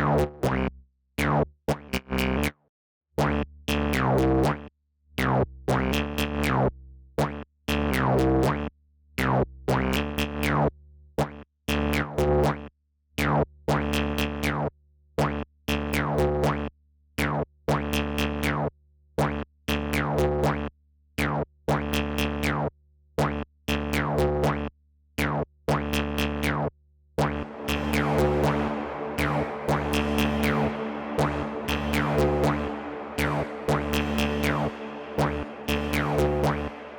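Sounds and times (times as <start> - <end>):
sequenced synth bass notes: 27.2 - 36.9
noisy synth wash: 27.3 - 36.9.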